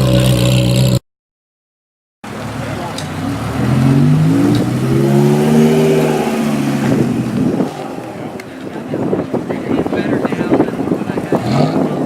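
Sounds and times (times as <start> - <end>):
car engine revving: 2.3 - 9.4.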